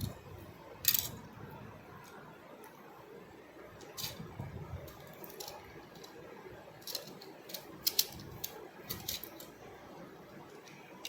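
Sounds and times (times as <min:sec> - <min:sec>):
plastic toy parts clicking: 0:00.8 - 0:01.2, 0:03.8 - 0:04.2, 0:04.8 - 0:06.2, 0:06.8 - 0:09.6.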